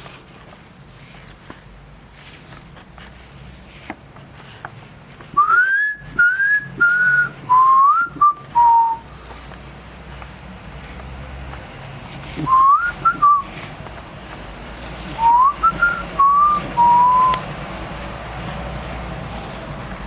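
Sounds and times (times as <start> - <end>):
person whistling a melody: 5.4 - 9.1, 12.4 - 13.4, 15.2 - 17.4.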